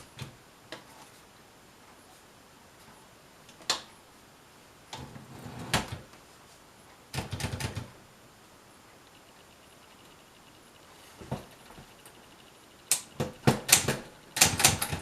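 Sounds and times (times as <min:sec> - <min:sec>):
typewriter clicking and clattering: 0:07.1 - 0:07.9, 0:12.9 - 0:15.0.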